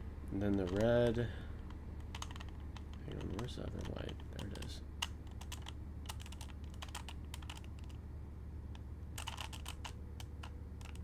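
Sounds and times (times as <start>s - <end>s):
low steady hum: 0.0s - 11.0s
plastic puzzle cube clicking: 1.6s - 8.0s, 9.2s - 11.0s.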